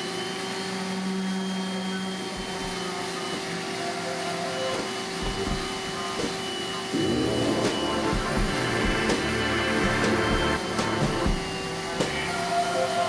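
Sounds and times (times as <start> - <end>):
dust extraction vacuum: 0.0 - 13.0
power sander running: 6.9 - 12.3.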